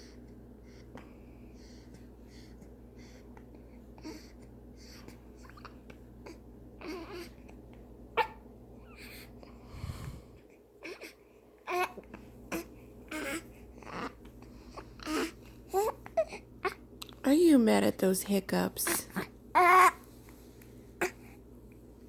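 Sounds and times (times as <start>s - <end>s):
baby fussy crying: 6.3s - 7.4s, 10.8s - 14.2s, 15.0s - 16.8s, 19.1s - 20.0s.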